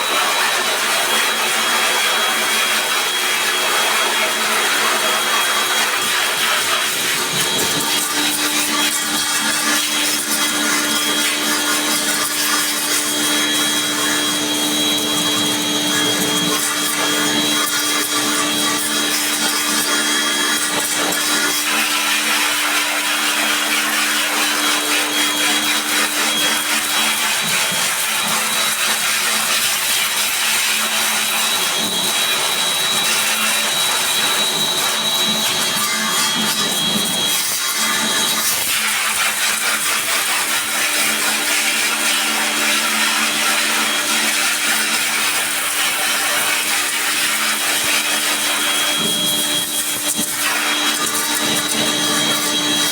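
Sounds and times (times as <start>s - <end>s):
machine motor running: 5.6s - 28.7s.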